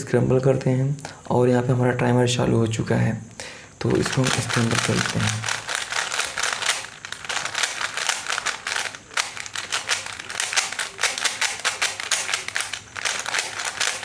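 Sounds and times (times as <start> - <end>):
puzzle cube clicking: 3.8 - 14.0.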